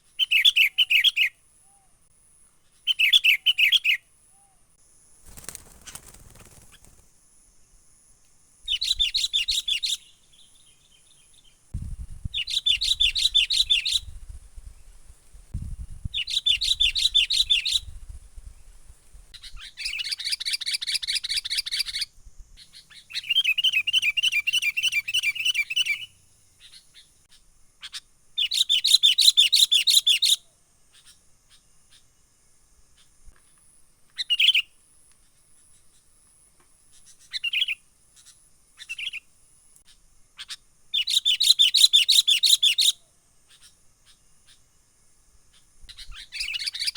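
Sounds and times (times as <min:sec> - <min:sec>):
bulbul calling in fast bursts: 0:02.8 - 0:04.0, 0:05.2 - 0:07.1, 0:08.7 - 0:10.2, 0:12.2 - 0:14.3, 0:16.1 - 0:18.0, 0:19.4 - 0:32.0, 0:39.9 - 0:44.6, 0:45.5 - 0:46.9.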